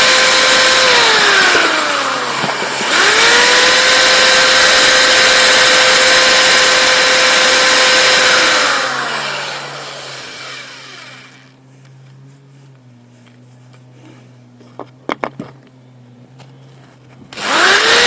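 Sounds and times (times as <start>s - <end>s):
power tool motor whine: 0.0s - 11.6s, 17.3s - 18.0s.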